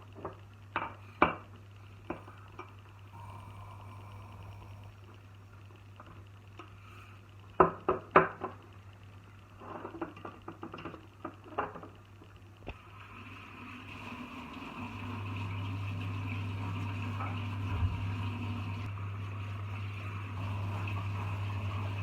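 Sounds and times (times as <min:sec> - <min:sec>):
low steady hum: 0:00.0 - 0:07.6, 0:12.0 - 0:22.0.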